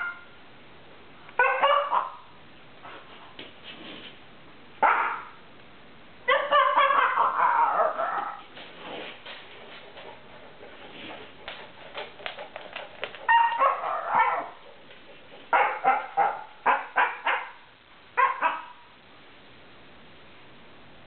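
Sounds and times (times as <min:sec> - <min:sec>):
puppy making calls: 0:06.3 - 0:08.4, 0:13.1 - 0:14.8.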